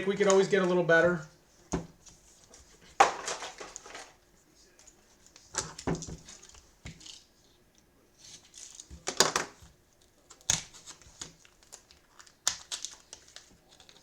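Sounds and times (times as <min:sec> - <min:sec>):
plastic wrapping crinkling and tearing: 0:10.0 - 0:14.0.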